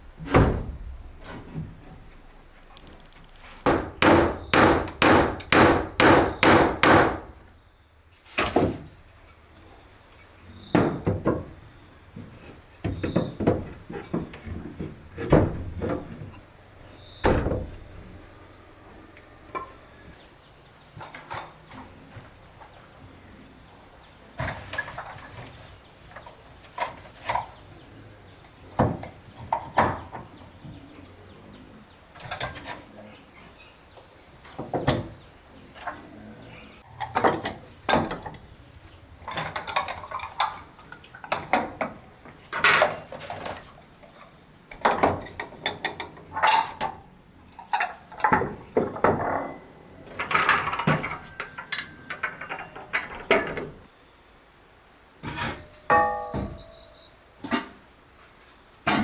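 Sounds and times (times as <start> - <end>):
insects chirring: 0.0 - 59.0
hard objects knocking and clattering: 10.7 - 16.4, 37.0 - 38.5, 47.6 - 53.9, 55.2 - 56.8.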